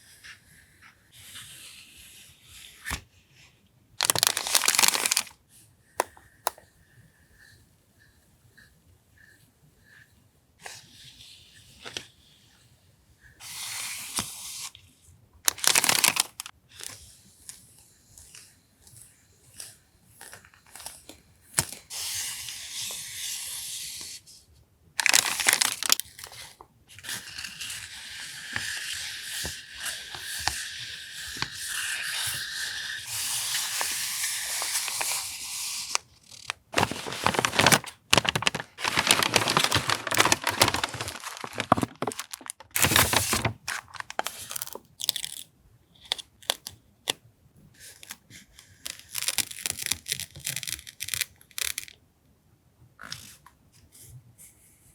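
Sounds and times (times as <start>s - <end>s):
packaging crinkling and rustling: 4.0s - 5.4s, 15.5s - 16.5s, 25.0s - 26.4s, 33.6s - 45.4s, 48.8s - 52.0s.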